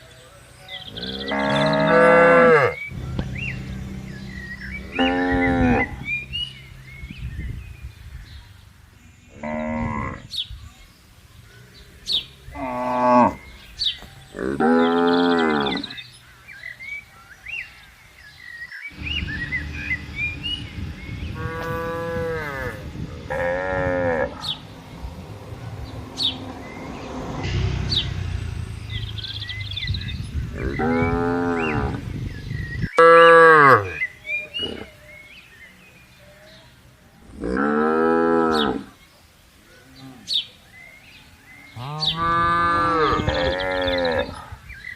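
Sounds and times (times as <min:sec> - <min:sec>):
cattle mooing: 0:00.9 - 0:06.4, 0:14.3 - 0:16.0, 0:21.3 - 0:24.6, 0:41.8 - 0:44.4.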